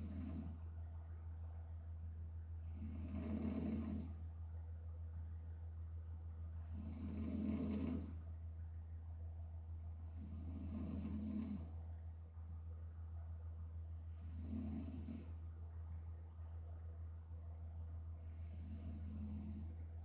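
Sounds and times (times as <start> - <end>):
woman snoring: 0.0 - 0.6, 2.7 - 4.2, 6.6 - 8.2, 10.1 - 11.7, 14.2 - 15.3, 18.4 - 19.8
steady low hum: 0.0 - 20.0.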